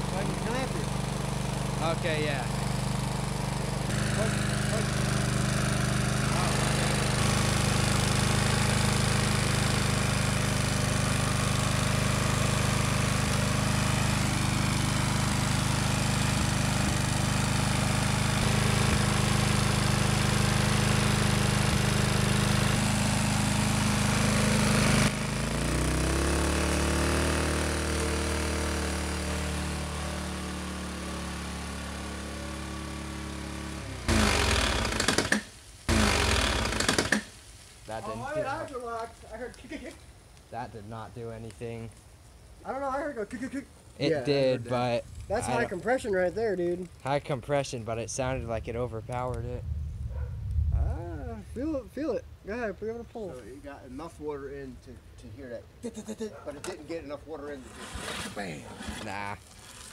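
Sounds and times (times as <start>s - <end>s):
lawn mower engine running: 0.0s - 39.6s, 56.6s - 59.9s.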